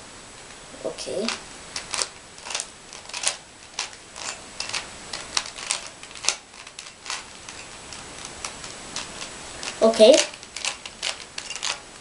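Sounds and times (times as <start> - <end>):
puzzle cube plastic clicks: 1.2 - 11.8.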